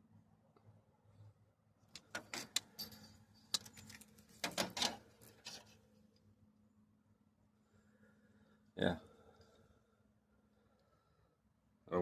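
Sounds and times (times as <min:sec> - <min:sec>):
hard parts clicking and rattling: 0:01.9 - 0:05.6.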